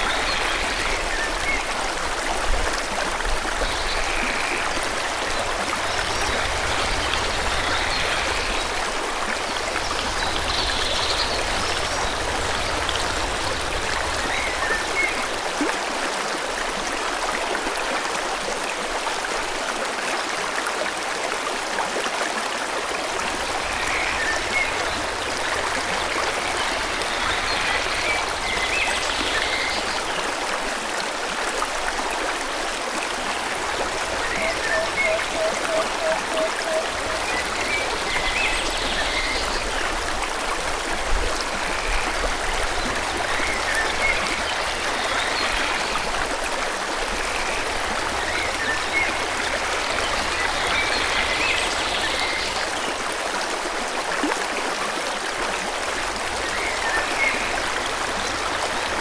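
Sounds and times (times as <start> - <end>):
stream flowing: 0.0 - 59.0.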